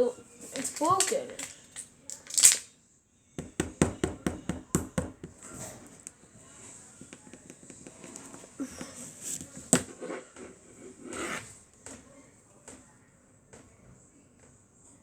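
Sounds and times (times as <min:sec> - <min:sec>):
small tools clicking and tapping: 0:00.5 - 0:02.7.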